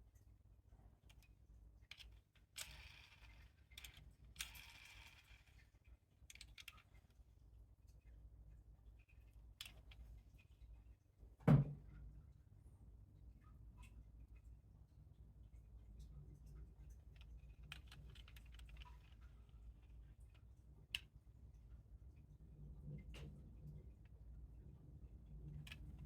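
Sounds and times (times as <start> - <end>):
small clicks: 1.0 - 8.2, 8.9 - 10.7, 16.0 - 21.3, 25.4 - 26.0
dull thump: 11.4 - 11.8.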